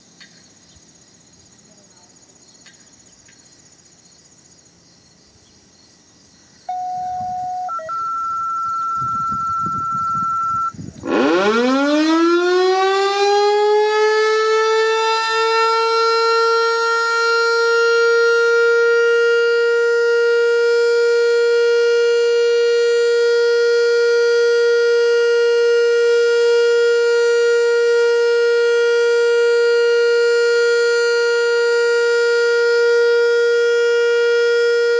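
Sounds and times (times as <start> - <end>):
short steady tones: 6.7 - 11.8
warning siren winding up: 6.7 - 21.3.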